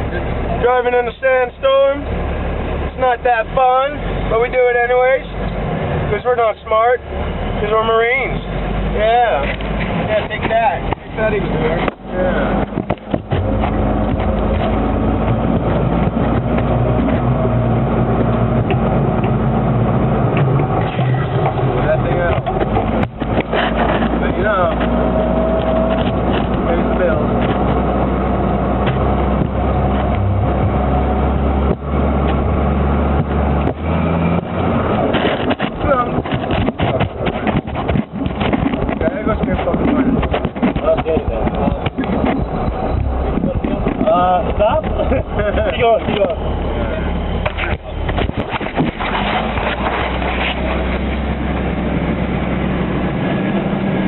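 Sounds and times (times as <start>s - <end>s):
military vehicle engine driving: 0.0s - 54.0s
road noise: 0.0s - 54.0s
rattles and knocks: 9.4s - 17.4s, 20.3s - 25.1s, 33.2s - 46.4s, 47.4s - 51.1s.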